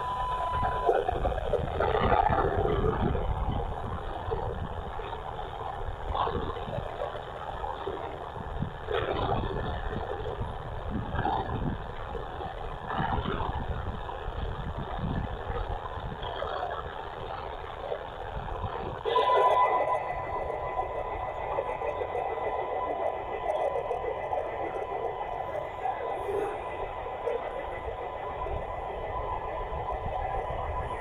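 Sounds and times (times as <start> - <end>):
radio interference rumbling hiss: 0.0 - 31.0
steady tone: 17.5 - 31.0.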